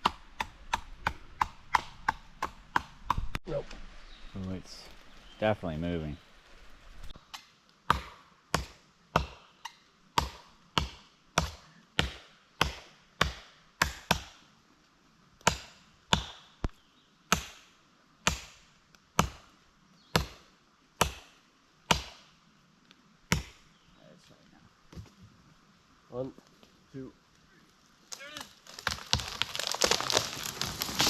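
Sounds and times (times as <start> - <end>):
hatchet chopping wood: 0.0 - 3.4, 7.3 - 14.4, 15.4 - 16.5, 17.3 - 18.6, 19.2 - 19.4, 20.1 - 20.4, 21.0 - 22.3, 23.3 - 23.6.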